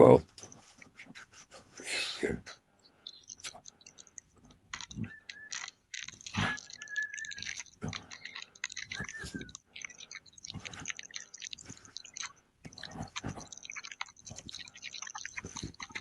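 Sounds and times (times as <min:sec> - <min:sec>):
plastic case crinkling and clicking: 0:04.5 - 0:09.9.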